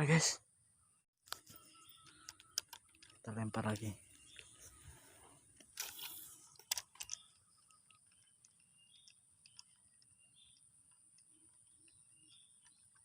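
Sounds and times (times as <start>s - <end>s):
fishing reel clicking: 5.6s - 10.1s.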